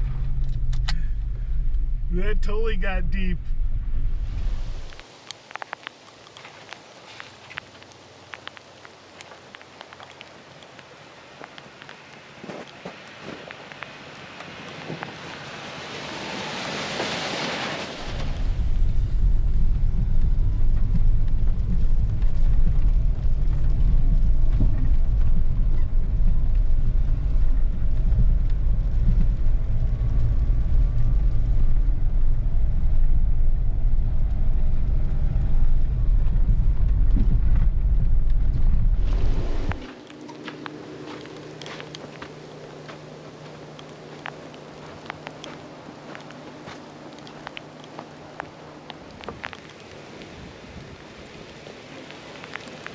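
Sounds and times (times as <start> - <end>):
low engine rumble: 0.0 - 5.1, 18.0 - 49.8.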